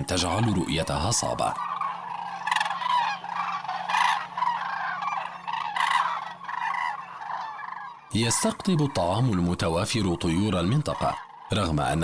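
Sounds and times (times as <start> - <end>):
cranes honking and trumpeting: 0.0 - 12.0.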